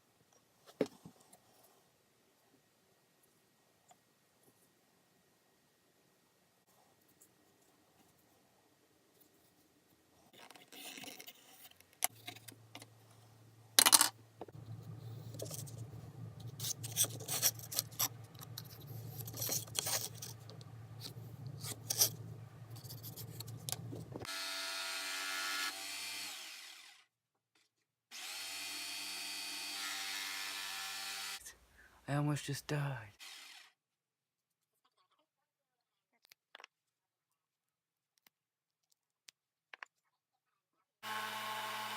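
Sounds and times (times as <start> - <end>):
handling noise: 13.8 - 24.3
power drill motor whining: 24.2 - 27.0, 28.2 - 31.4, 33.2 - 33.7, 41.0 - 41.9
power tool cutting wood: 24.2 - 27.1, 28.1 - 31.5, 33.2 - 33.8, 41.0 - 41.9.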